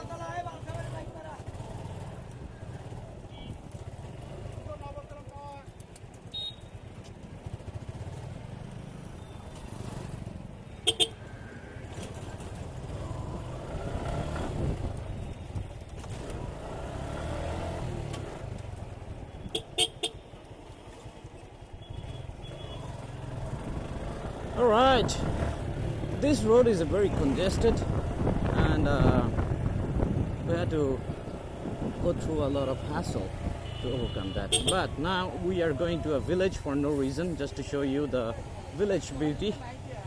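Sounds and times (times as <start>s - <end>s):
motorcycle engine rumbling: 0.0s - 40.0s
road traffic: 0.0s - 40.0s
short horn beeps: 6.3s - 6.9s.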